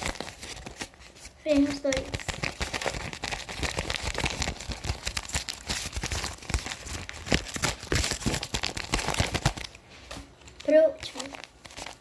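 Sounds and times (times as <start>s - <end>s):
squishy toys crackling: 10.5s - 12.0s.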